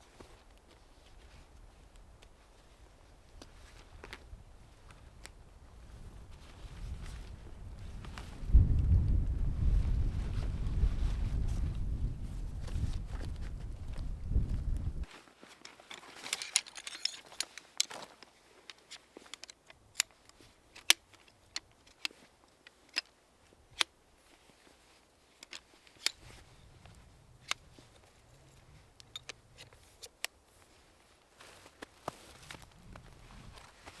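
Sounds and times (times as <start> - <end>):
low wind rumble: 4.2 - 15.1.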